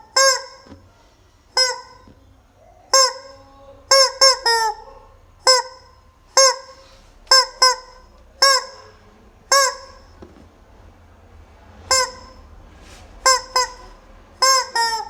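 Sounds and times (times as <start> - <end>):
rubber chicken toy squawking: 0.0 - 0.8, 1.5 - 2.1, 2.9 - 10.2, 11.9 - 12.4, 13.2 - 15.0.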